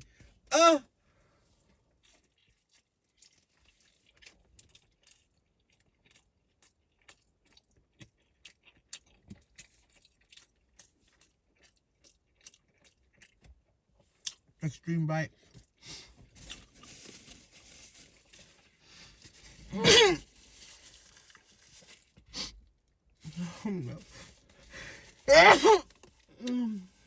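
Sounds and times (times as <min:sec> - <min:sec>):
person biting and chewing: 0:02.0 - 0:13.5, 0:14.2 - 0:14.4.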